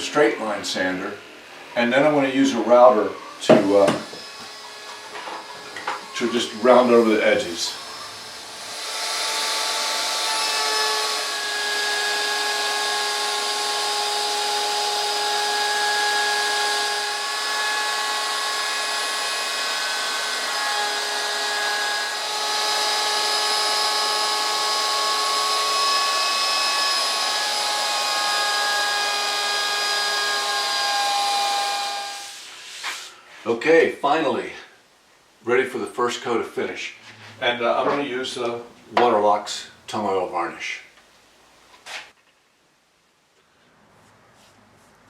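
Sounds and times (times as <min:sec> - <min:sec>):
electric power tool on wood: 0:02.6 - 0:33.1.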